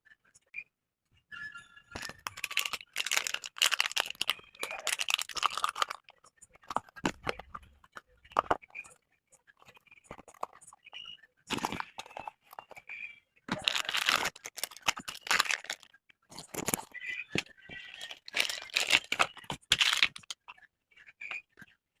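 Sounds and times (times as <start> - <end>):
packaging crinkling and tearing: 2.0 - 6.1, 13.5 - 20.4.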